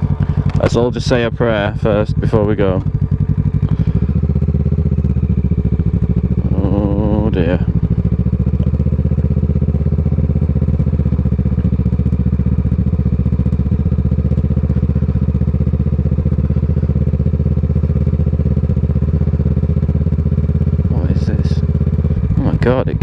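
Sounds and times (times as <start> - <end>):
motorcycle engine running: 0.0 - 23.0.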